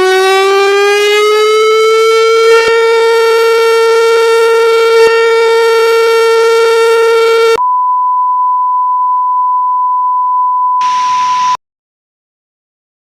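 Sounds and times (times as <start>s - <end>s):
buzzy alert tone: 2.2s - 7.6s
high pure beep tone: 7.6s - 11.6s.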